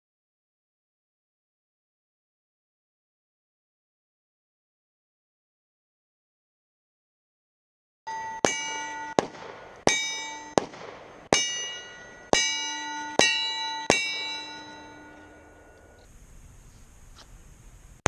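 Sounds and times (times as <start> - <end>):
steel target ringing: 8.1 - 16.1
pistol shots: 8.4 - 12.5.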